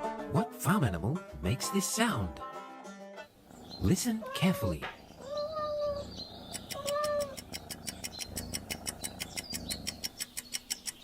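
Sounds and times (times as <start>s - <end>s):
cat meowing: 3.6s - 7.9s
fast even ticking: 6.4s - 11.0s.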